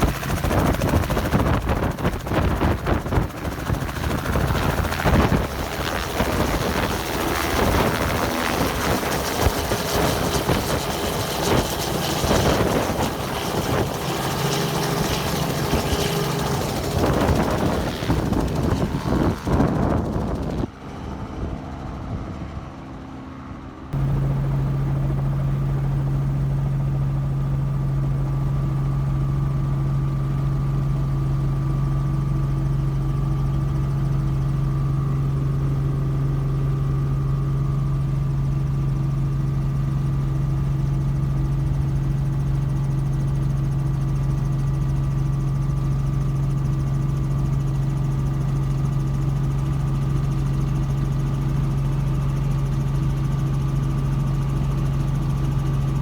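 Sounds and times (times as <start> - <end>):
vehicle engine droning: 24.0 - 26.4.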